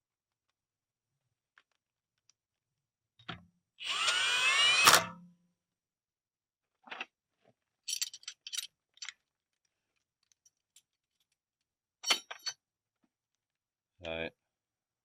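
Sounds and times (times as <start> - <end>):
metal hand tools clinking: 7.9 - 9.1.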